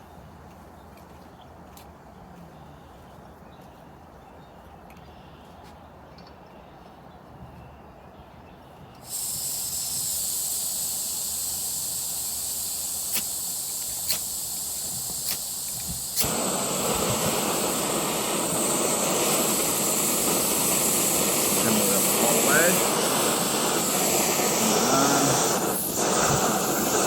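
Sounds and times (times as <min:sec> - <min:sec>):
burner flame rushing hiss: 0:09.0 - 0:27.0
gas hissing from valve: 0:09.0 - 0:27.0
igniter clicks: 0:09.0 - 0:27.0.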